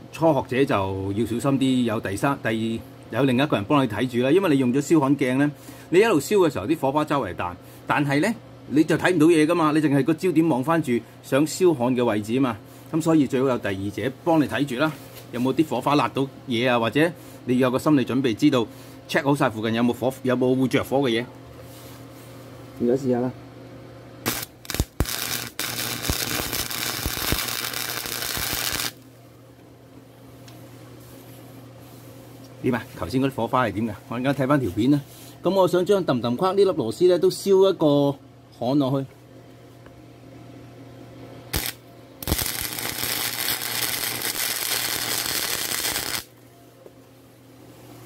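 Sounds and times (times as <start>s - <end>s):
welder arc crackling: 24.2s - 29.1s, 41.5s - 46.3s.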